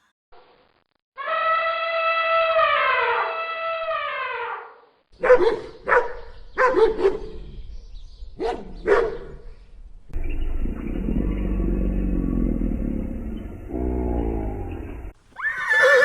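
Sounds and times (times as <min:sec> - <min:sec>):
dog barking: 0:05.2 - 0:07.4, 0:08.4 - 0:09.4.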